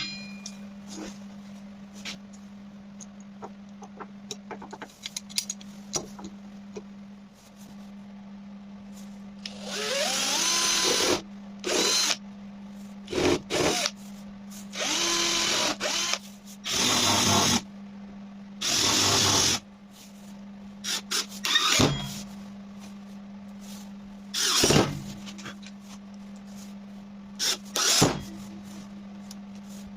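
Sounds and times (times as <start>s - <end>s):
steady low hum: 0.0s - 29.9s
electric drill whirring: 9.5s - 12.2s, 13.1s - 13.9s, 14.8s - 17.6s, 18.6s - 19.6s, 24.4s - 24.8s, 27.4s - 28.1s.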